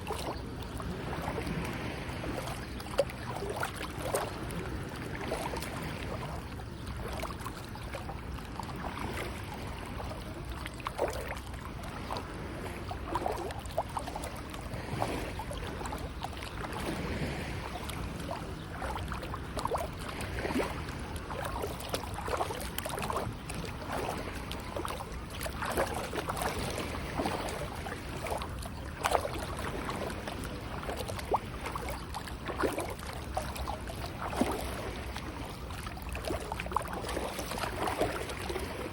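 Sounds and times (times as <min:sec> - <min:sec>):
sea water lapping and splashing: 0:00.0 - 0:38.9.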